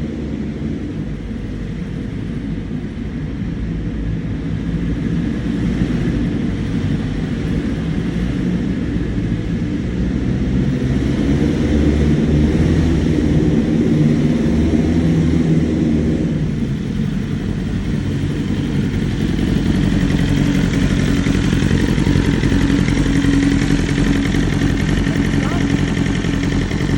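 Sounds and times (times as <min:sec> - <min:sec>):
motorcycle engine rough idle: 0:16.3 - 0:26.9.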